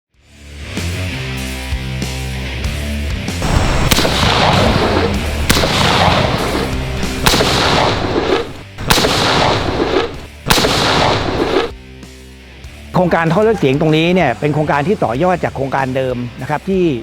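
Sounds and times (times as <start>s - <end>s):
background music: 0.2s - 17.0s
reverberant gunshots: 3.4s - 11.7s.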